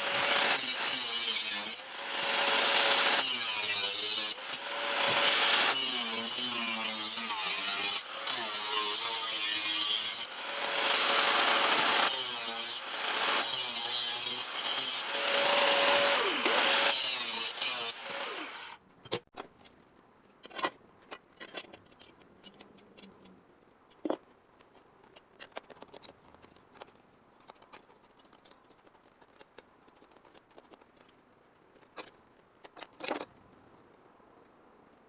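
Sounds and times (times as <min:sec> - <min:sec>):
power saw cutting sheet metal: 0:00.0 - 0:18.8
metal pieces and tools clicking: 0:20.4 - 0:31.2.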